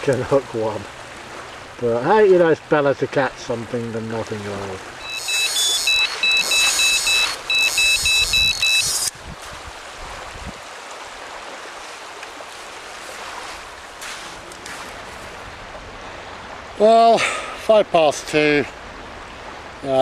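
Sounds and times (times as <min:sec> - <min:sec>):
lake water lapping: 0:00.0 - 0:17.6
wind: 0:00.0 - 0:20.0
bite alarm two-pitch beeps: 0:05.0 - 0:09.1.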